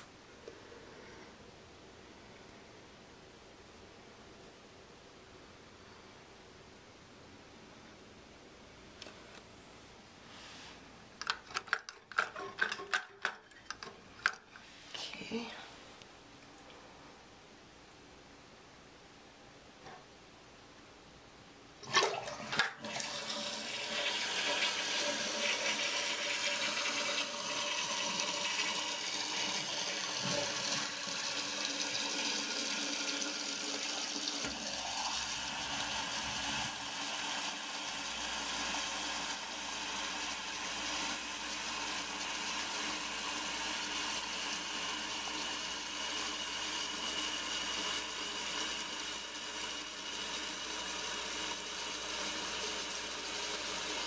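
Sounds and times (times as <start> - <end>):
tank refilling water running: 21.8 - 54.0
toilet flush water rushing: 21.8 - 54.0.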